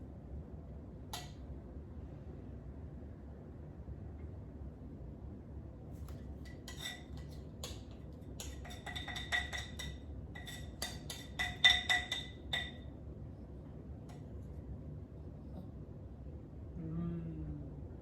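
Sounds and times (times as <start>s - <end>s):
cutlery clinking against a dish: 6.1s - 12.9s.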